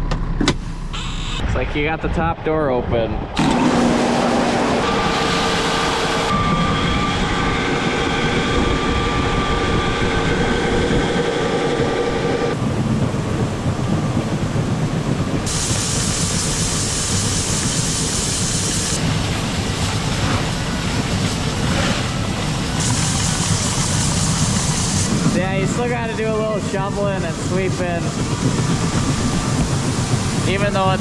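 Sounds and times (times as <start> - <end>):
grain auger whining: 3.4 - 12.6, 21.6 - 31.0
hiss: 15.5 - 31.0.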